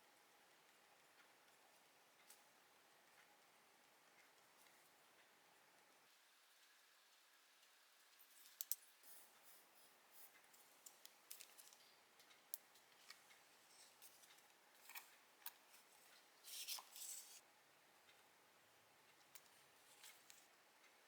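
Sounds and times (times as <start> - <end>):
small clicks: 7.6 - 9.6
paper rustle: 15.7 - 17.4.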